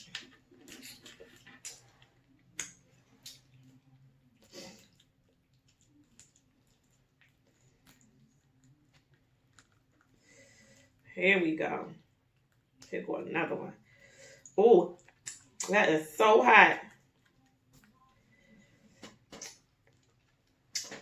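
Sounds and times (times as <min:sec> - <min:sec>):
wet chewing mouth sounds: 0:00.0 - 0:11.1, 0:14.4 - 0:15.7, 0:16.9 - 0:21.0.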